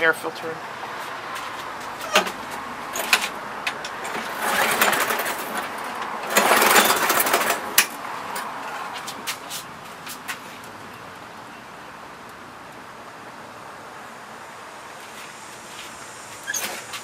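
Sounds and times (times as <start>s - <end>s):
lawn mower pull-start cranking: 3.0s - 7.9s.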